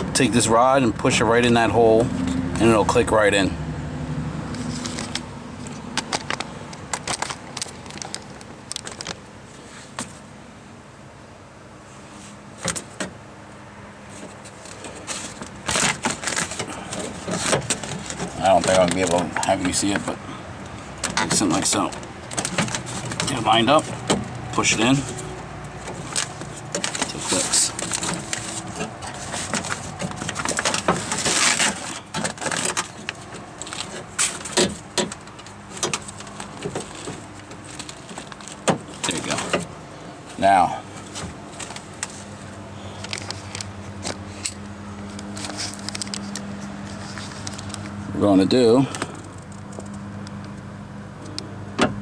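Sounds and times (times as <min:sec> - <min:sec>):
metal rods and plastic rattling: 0:04.5 - 0:09.2, 0:14.2 - 0:20.2, 0:20.9 - 0:39.7
scraping: 0:20.9 - 0:39.7.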